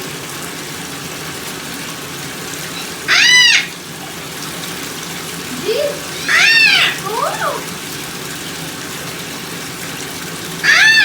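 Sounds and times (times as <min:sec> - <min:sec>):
running tap water: 0:00.0 - 0:11.0
parrot squawking: 0:02.6 - 0:03.9, 0:05.5 - 0:07.8, 0:10.6 - 0:11.0.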